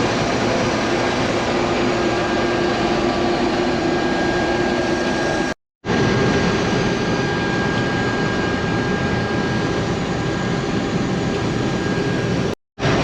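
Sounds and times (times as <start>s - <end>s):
combine harvester running: 0.0s - 8.4s
thin steady whine: 0.0s - 13.0s.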